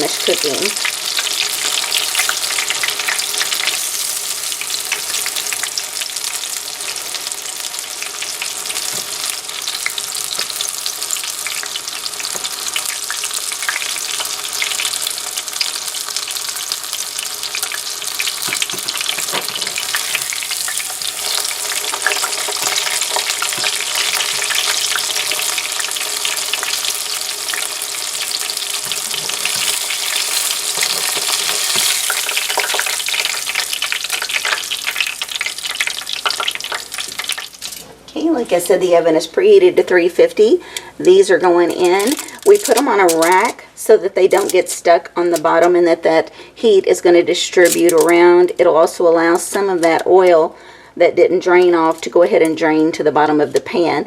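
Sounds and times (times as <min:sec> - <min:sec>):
chicken sizzling in hot oil: 0:00.0 - 0:37.8.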